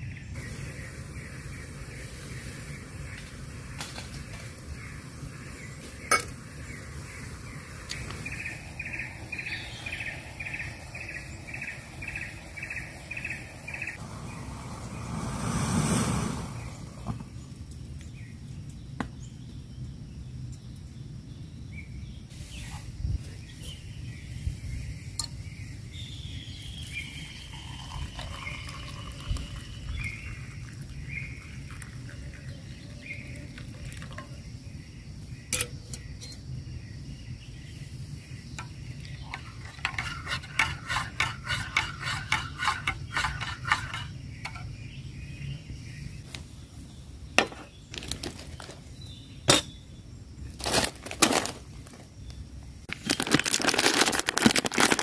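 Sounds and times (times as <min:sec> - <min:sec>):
steady low rumble: 0:04.5 - 0:18.3.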